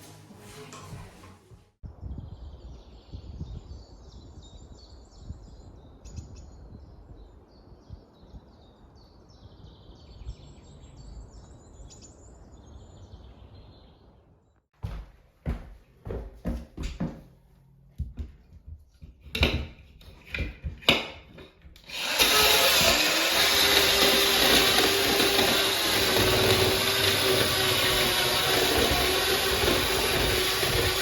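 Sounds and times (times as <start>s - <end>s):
songbirds chirping: 1.9s - 14.7s.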